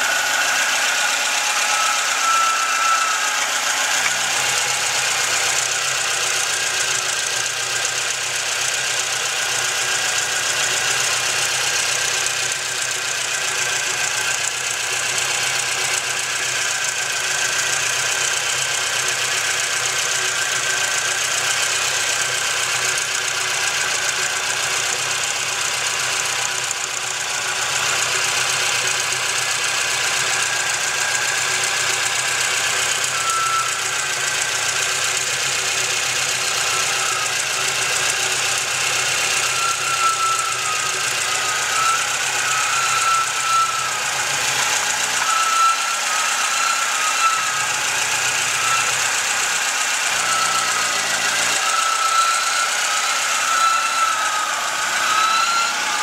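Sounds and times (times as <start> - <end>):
car engine running harshly: 0.0 - 56.0.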